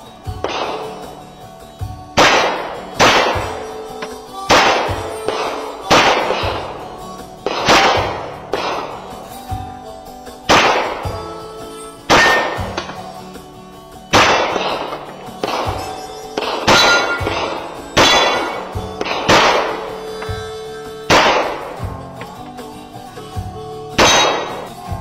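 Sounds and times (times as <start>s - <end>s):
metal target clang: 0.0s - 9.6s, 10.2s - 22.7s, 23.9s - 25.0s
background music: 0.0s - 25.0s
pistol shots: 0.4s - 1.2s, 2.2s - 6.8s, 7.5s - 9.4s, 10.4s - 11.2s, 12.1s - 13.4s, 14.1s - 20.4s, 21.0s - 21.9s, 24.0s - 24.7s.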